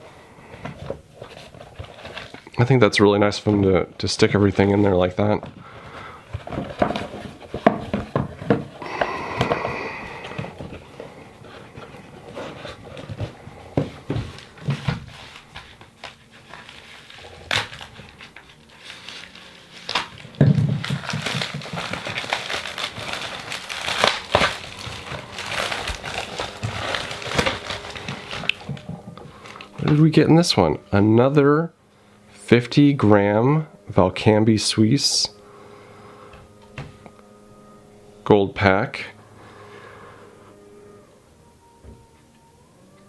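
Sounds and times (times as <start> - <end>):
packaging crinkling and rustling: 0.5 - 31.3.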